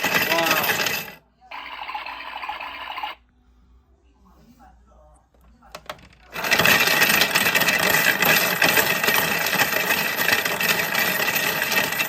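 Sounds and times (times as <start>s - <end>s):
coins clattering in washing machine: 0.0s - 1.2s, 6.0s - 12.0s
washing machine motor: 0.0s - 3.2s.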